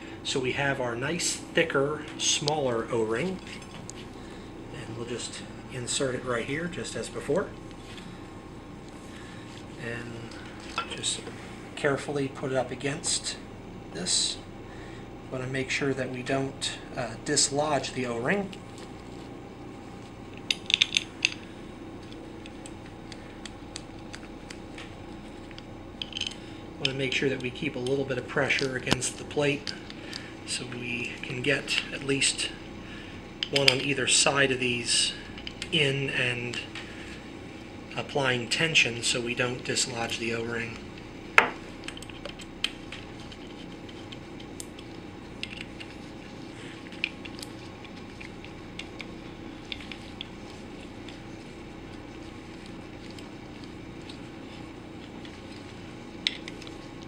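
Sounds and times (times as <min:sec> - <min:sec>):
steady low hum: 0:00.0 - 0:57.0
clicks of metal parts handled: 0:20.4 - 0:21.4.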